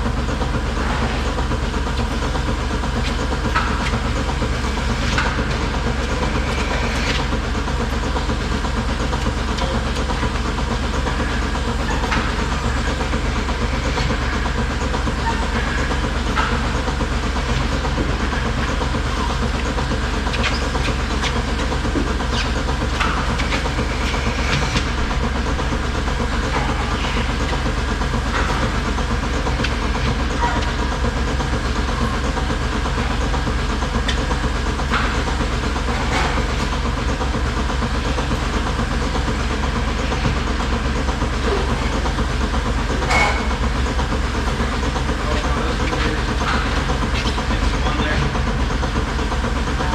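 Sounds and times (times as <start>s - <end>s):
milking system low hum: 0.0s - 49.9s.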